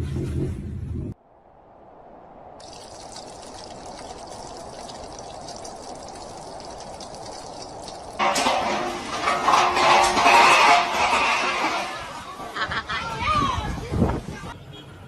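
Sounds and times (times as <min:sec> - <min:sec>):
steady rushing pouring noise: 0:02.4 - 0:13.6.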